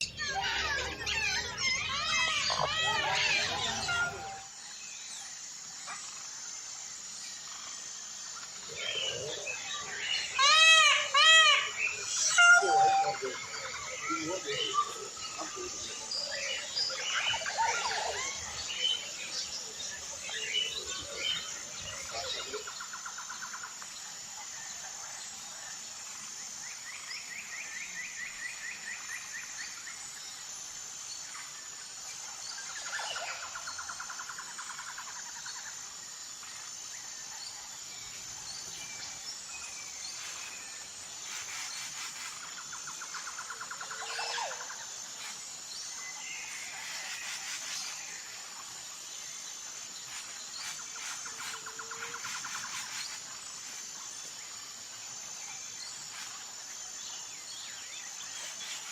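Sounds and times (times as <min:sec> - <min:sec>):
birds chirping and calling: 0:00.0 - 0:05.1, 0:08.4 - 0:23.6.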